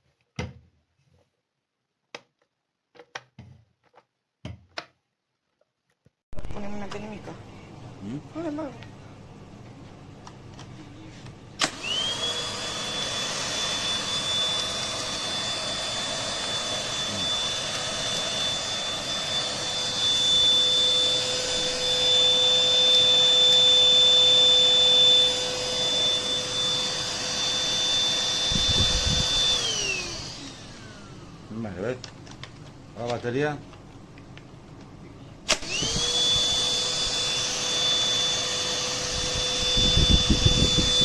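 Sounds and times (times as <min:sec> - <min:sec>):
vacuum cleaner motor whine: 0:06.4 - 0:32.1, 0:35.5 - 0:41.0.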